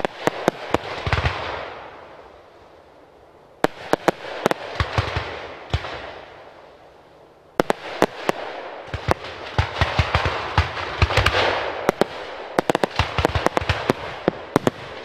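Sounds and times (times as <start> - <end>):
fireworks banging: 0.0 - 1.8, 7.6 - 15.0.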